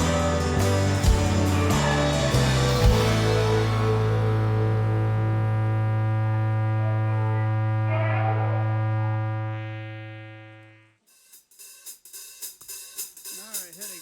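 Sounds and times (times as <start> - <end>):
drum beat with hi-hat: 0.0 - 4.3, 11.1 - 14.0
sustained low music chord: 0.0 - 10.8.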